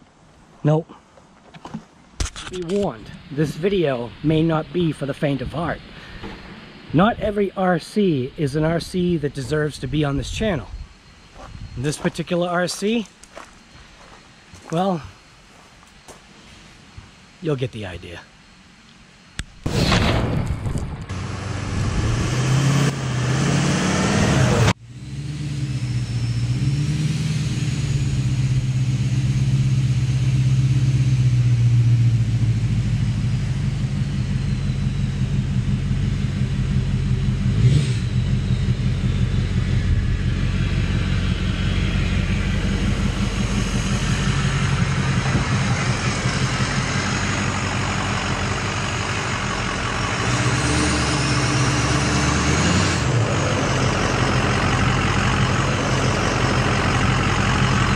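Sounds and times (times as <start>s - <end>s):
engine running at low revs: 2.4s - 17.4s, 18.4s - 57.9s
short sharp crack: 19.6s - 21.1s.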